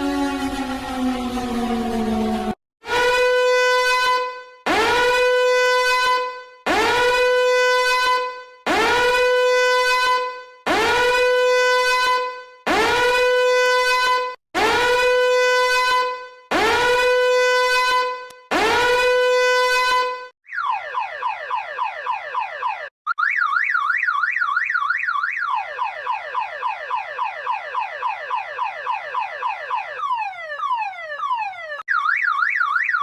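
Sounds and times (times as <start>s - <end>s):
horn-like electronic alarm blasts: 0.0s - 21.6s.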